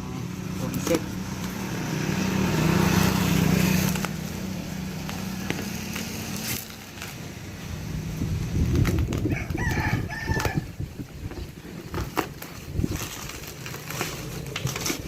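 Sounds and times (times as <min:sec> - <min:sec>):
motor traffic rumble: 0:00.0 - 0:15.0
rooster crowing: 0:09.3 - 0:10.8.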